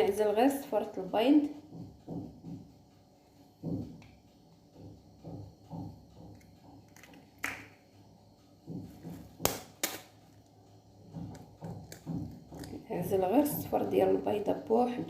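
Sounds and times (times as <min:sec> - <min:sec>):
eggshells cracking against a bowl: 0:06.8 - 0:07.8.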